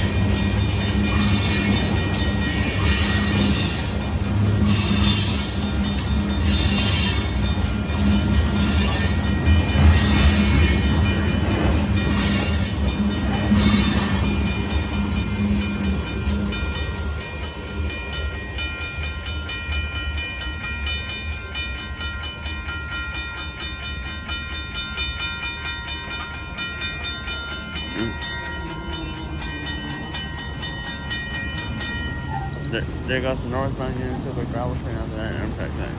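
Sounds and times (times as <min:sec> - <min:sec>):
freight train rumbling past: 0:00.0 - 0:35.9
high-pitched wheel squeal: 0:04.6 - 0:05.7, 0:13.6 - 0:14.4.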